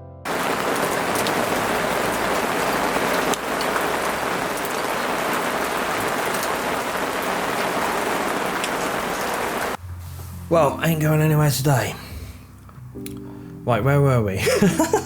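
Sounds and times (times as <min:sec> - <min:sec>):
steady rain falling: 0:00.3 - 0:09.8, 0:14.4 - 0:15.0.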